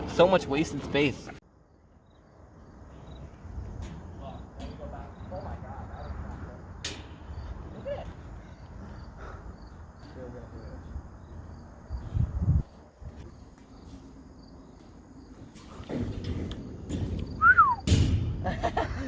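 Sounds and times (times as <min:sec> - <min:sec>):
faint insects chirping: 0:00.0 - 0:19.0
loud low thud: 0:15.9 - 0:18.7.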